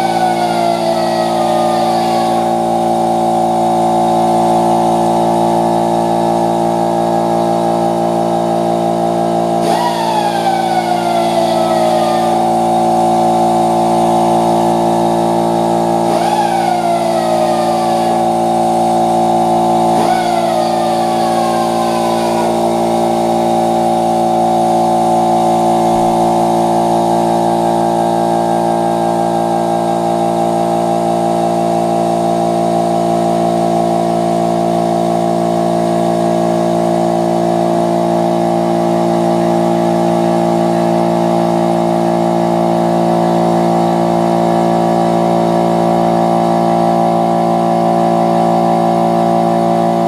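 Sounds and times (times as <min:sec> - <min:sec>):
power tool motor whining: 0:00.0 - 0:32.5.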